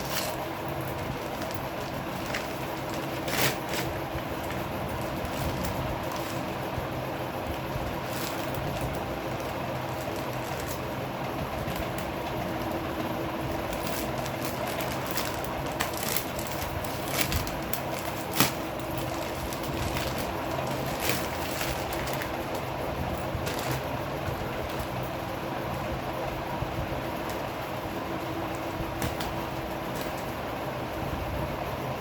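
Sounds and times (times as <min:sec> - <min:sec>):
packaging crinkling and clicking: 0:00.0 - 0:06.7, 0:08.0 - 0:10.9, 0:13.6 - 0:24.0, 0:29.0 - 0:30.3
background hum: 0:00.0 - 0:32.0.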